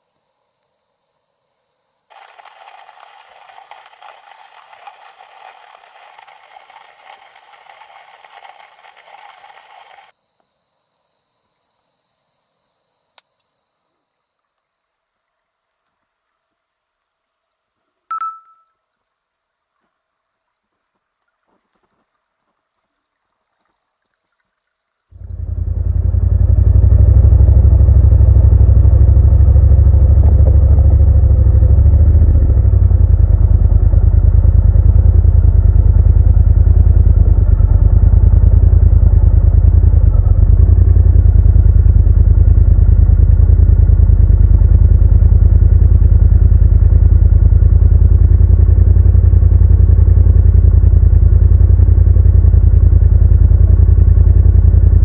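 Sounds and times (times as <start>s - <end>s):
motorcycle engine idling: 25.2s - 55.0s.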